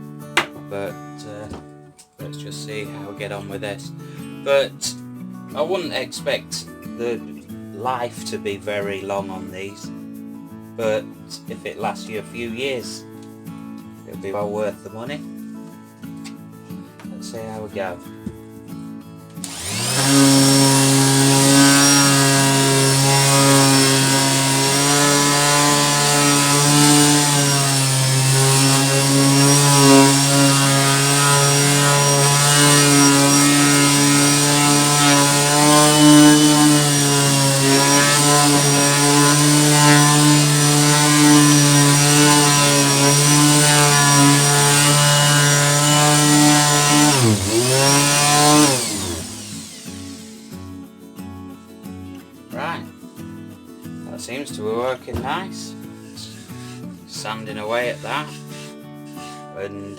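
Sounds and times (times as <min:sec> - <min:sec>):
orbital sander sanding wood: 0:19.4 - 0:50.6.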